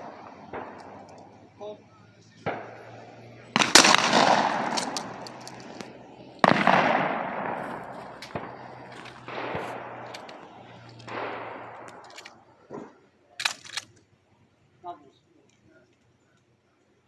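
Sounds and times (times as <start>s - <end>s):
shotgun shots: 0.0s - 13.9s
faint bangs: 0.0s - 14.0s
sharp clicks: 0.4s - 1.4s, 8.2s - 12.4s, 13.4s - 14.1s.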